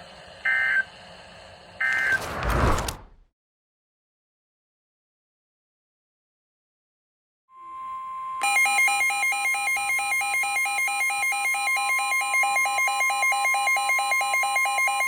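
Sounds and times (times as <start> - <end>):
two-pitch beeping alarm: 7.6 - 15.0.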